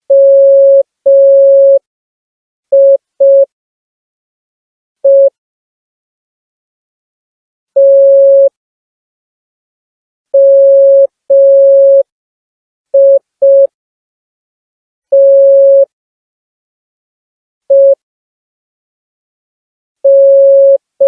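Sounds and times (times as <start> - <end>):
morse code beeps: 0.1 - 1.8, 2.8 - 3.4, 5.1 - 5.3, 10.4 - 12.0, 15.2 - 15.8, 20.1 - 20.8.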